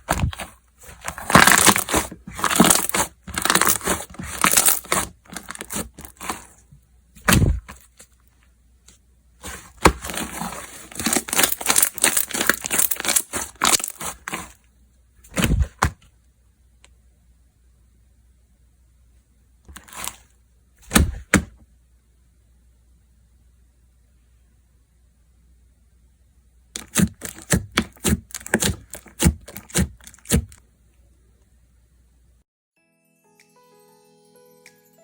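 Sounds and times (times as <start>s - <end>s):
slime crackling and popping: 0.0s - 6.4s, 9.5s - 14.5s
slime slapping: 0.0s - 6.4s.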